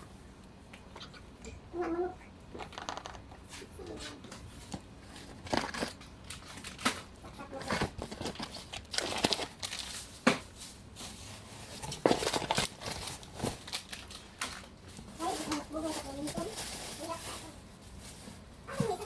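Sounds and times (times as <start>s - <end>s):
plastic packaging crinkling: 5.0s - 19.0s.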